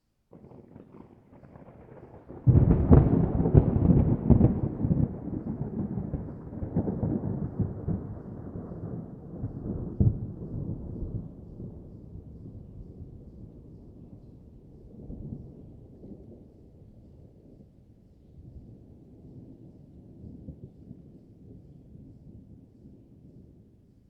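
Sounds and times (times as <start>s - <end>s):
thunder rumbling: 0.3s - 17.8s.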